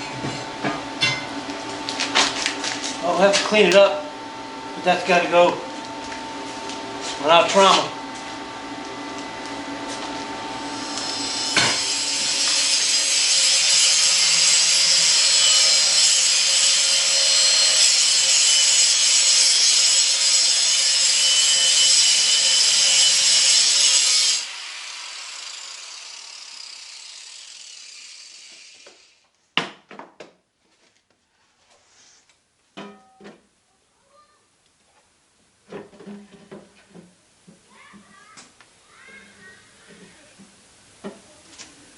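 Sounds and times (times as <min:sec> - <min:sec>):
power grinder grinding steel: 0:09.9 - 0:29.2.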